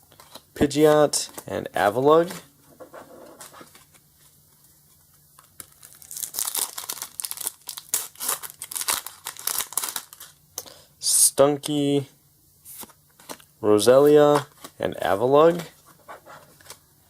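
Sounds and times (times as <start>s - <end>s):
foil wrapper tearing and crinkling: 5.4s - 10.4s.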